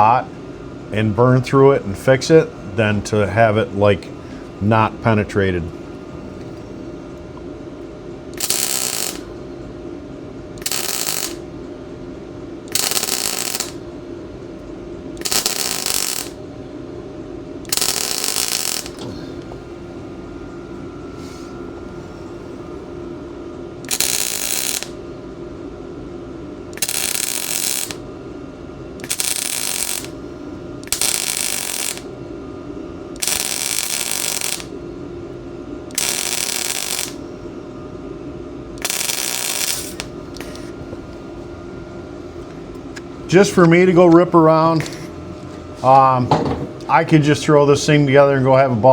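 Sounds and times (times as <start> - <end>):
steady background hum: 0.0 - 48.9
welder crackling arc: 8.3 - 9.5, 10.5 - 11.5, 12.6 - 13.9, 15.1 - 16.5, 17.7 - 19.5, 23.8 - 25.0, 26.8 - 28.1, 29.0 - 32.2, 33.1 - 34.8, 35.9 - 37.3, 38.8 - 40.8.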